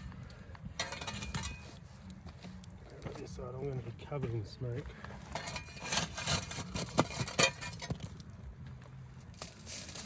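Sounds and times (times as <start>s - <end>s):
metal scraping and clinking: 0.8s - 4.4s, 5.2s - 8.3s, 9.2s - 10.0s.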